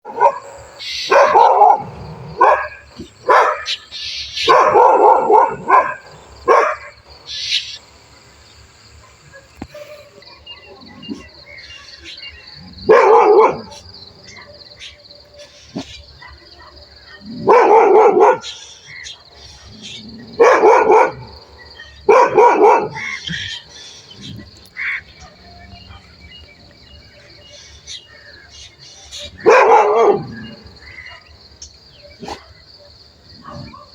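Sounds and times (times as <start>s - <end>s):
dog barking: 0.0s - 3.8s, 4.4s - 7.0s, 9.0s - 11.8s, 12.7s - 18.6s, 20.2s - 23.7s, 29.2s - 31.4s, 32.2s - 33.9s.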